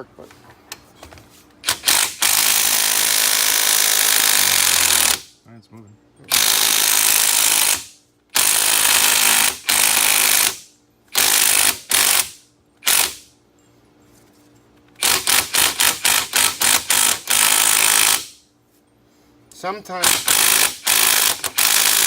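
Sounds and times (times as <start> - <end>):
cordless impact wrench hammering: 1.6 - 5.3, 6.3 - 13.3, 14.9 - 18.4, 20.0 - 22.0.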